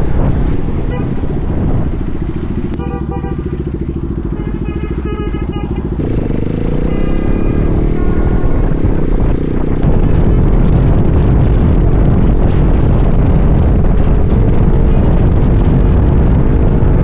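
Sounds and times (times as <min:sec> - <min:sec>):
wind rumble on microphone: 0:00.0 - 0:04.6, 0:05.2 - 0:17.0
motorcycle running: 0:00.0 - 0:17.0
car horn honking: 0:00.7 - 0:01.3, 0:02.7 - 0:09.2.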